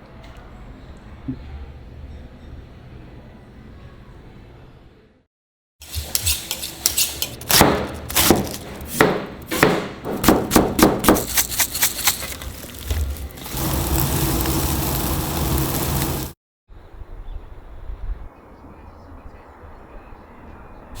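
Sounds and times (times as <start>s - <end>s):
metal utensils clattering: 5.8s - 9.0s, 11.1s - 13.5s
steady hiss: 11.4s - 16.4s.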